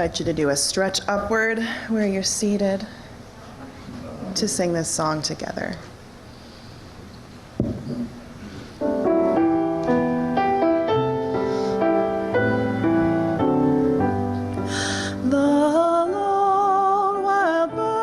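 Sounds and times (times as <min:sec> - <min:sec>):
sustained hymn chords: 0:08.8 - 0:18.0.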